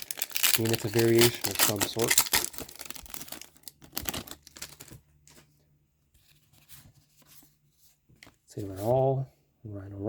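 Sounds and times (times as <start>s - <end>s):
card pack wrapper crinkling: 0.0s - 5.0s.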